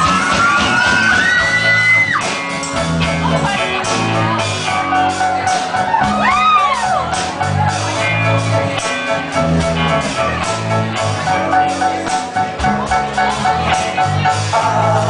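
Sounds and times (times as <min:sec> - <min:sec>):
audience shouting and whooping: 0:00.0 - 0:02.5, 0:05.5 - 0:07.3
live band playing: 0:00.0 - 0:15.0.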